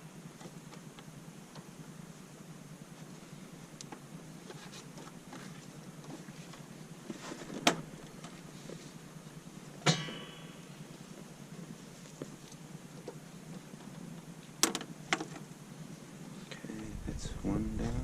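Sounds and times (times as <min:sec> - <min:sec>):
sharp metallic clanks: 0:09.9 - 0:10.6.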